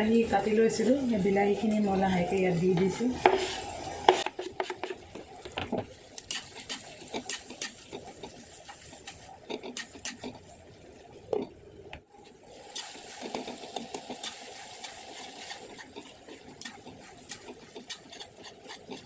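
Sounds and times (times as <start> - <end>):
vegetables sizzling in oil: 0.0 - 10.2, 12.5 - 19.0.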